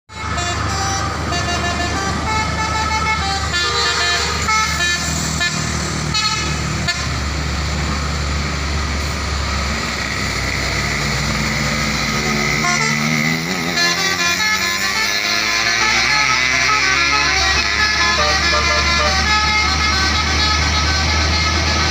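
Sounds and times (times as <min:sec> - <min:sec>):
musical air horns: 0:00.1 - 0:07.3, 0:11.9 - 0:21.9
truck engines rumbling: 0:00.1 - 0:21.9.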